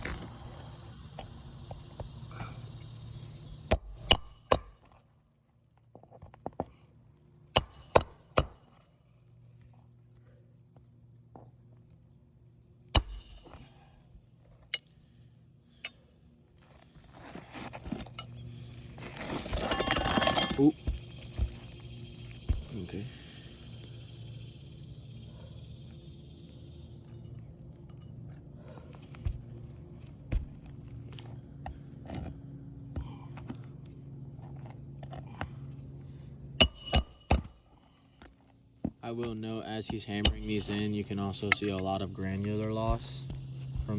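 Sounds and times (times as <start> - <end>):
steady low hum: 0.0 - 43.9
hammer striking nails: 3.7 - 5.0, 7.6 - 8.6, 13.0 - 13.6, 36.6 - 37.6, 40.2 - 40.9
hammer striking roofing nails: 7.6 - 8.6, 36.6 - 37.6.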